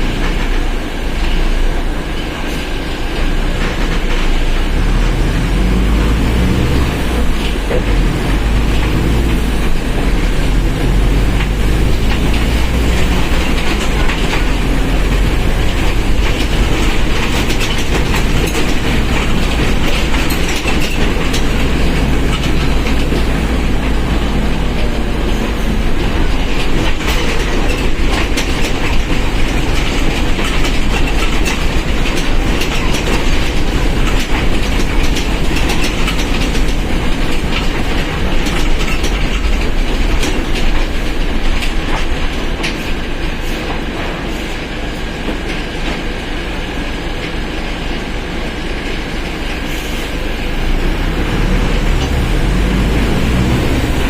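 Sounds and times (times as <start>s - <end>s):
bus drivetrain low drone: 0.0s - 54.0s
clattering rattles: 3.1s - 44.2s.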